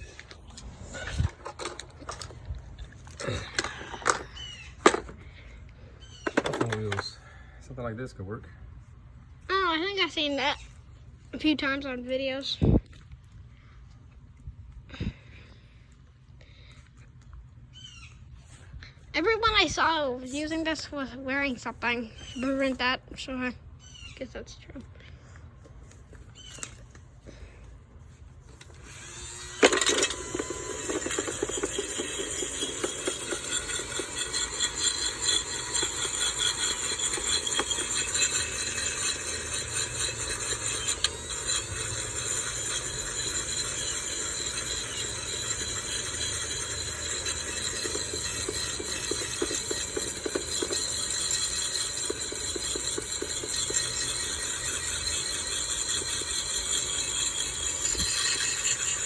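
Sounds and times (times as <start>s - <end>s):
rotary tool running at high speed: 28.6s - 59.0s
wire brush scouring metal: 28.6s - 59.0s.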